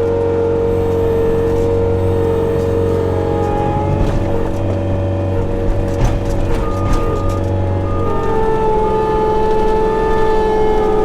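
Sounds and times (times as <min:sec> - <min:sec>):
loader engine running: 0:00.0 - 0:11.0
metal clanks: 0:00.9 - 0:08.7.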